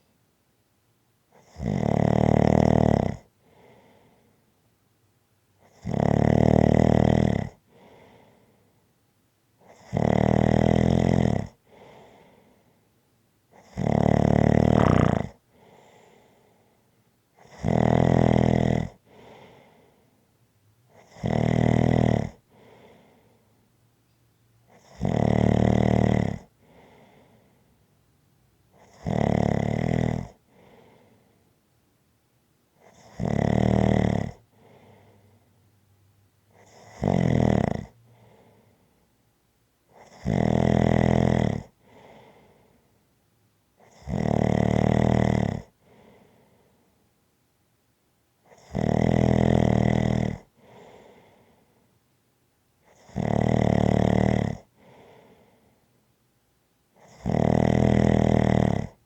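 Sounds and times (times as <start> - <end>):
loud snoring: 1.4 - 3.3, 5.6 - 7.8, 9.7 - 12.1, 13.6 - 16.0, 17.4 - 19.4, 20.9 - 22.9, 24.7 - 27.2, 28.8 - 30.8, 32.8 - 35.2, 36.6 - 38.4, 39.9 - 42.3, 43.8 - 45.8, 48.5 - 51.1, 52.9 - 55.0, 57.0 - 59.0
soft breath: 3.4 - 4.6, 7.6 - 9.0, 11.6 - 13.0, 14.6 - 17.2, 19.0 - 20.3, 22.4 - 23.7, 26.5 - 27.9, 30.4 - 31.6, 34.4 - 36.6, 37.9 - 39.2, 41.7 - 43.1, 45.7 - 47.1, 50.4 - 52.0, 54.7 - 56.0.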